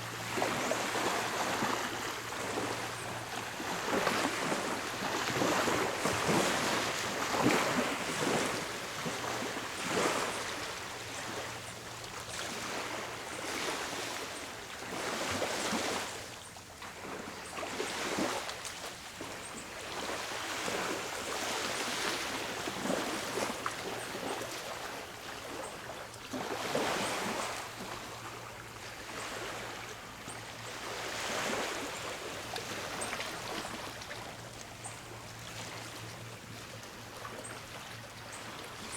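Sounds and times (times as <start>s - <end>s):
small sea waves washing in: 0.0s - 11.4s.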